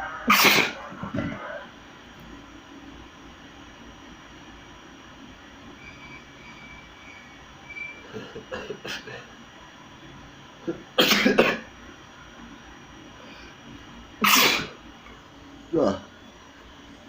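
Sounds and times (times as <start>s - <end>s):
person sneezing: 0.2s - 1.5s, 14.2s - 14.8s.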